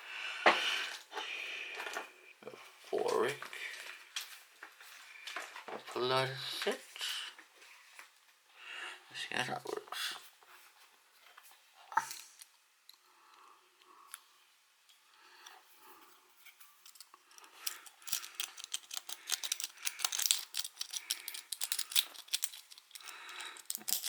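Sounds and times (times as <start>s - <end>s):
lock pick clicking and scraping: 16.8s - 24.0s.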